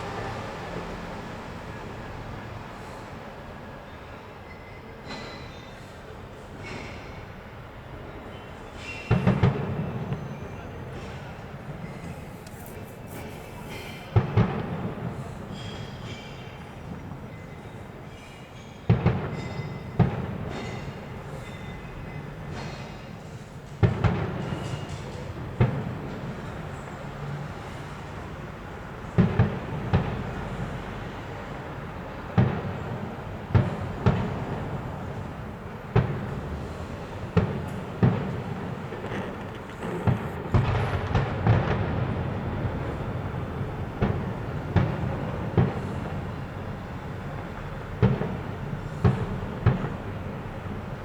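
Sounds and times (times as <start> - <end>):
fireworks booming: 8.8 - 17.5, 18.9 - 51.0.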